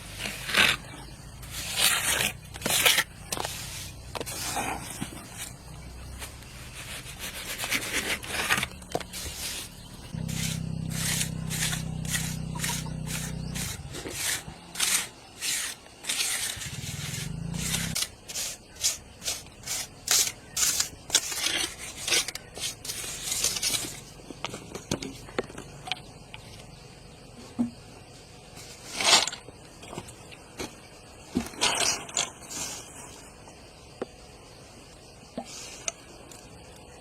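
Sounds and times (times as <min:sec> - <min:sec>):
steady low hum: 0:00.0 - 0:15.3
rubbing or scraping strokes: 0:00.0 - 0:24.0.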